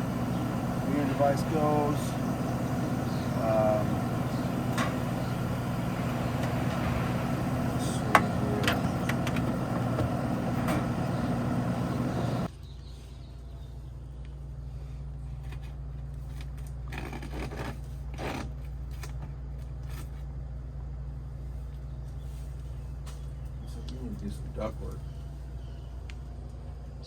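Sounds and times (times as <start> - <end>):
low steady hum: 0.0 - 16.5
air conditioning unit running: 0.0 - 27.0.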